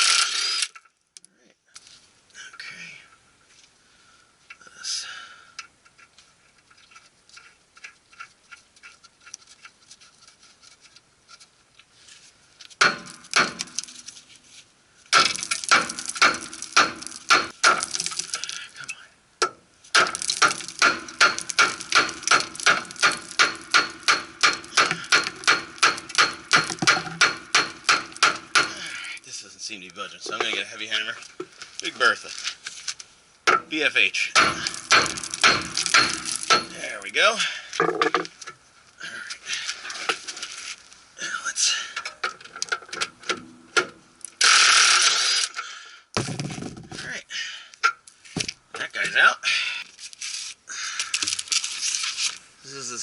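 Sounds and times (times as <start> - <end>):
hammer striking steel: 12.8 - 13.8, 15.1 - 17.8, 19.4 - 28.8, 34.4 - 36.8.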